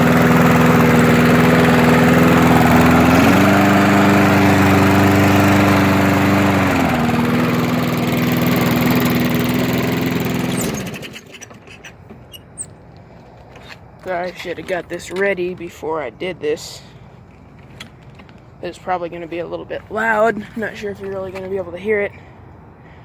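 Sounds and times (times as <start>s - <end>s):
lawn mower engine running: 0.0s - 15.9s, 16.9s - 22.1s.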